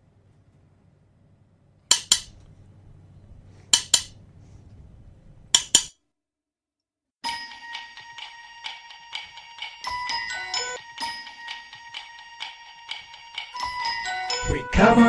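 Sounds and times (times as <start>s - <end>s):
faint low hum: 0.0s - 5.6s
sharp clinking clicks: 1.9s - 2.5s, 3.7s - 4.2s, 5.6s - 5.9s.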